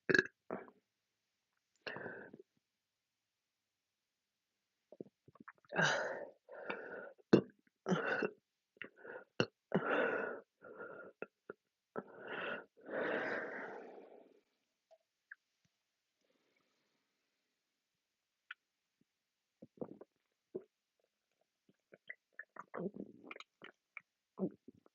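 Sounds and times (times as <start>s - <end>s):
person burping: 0.1s - 0.7s.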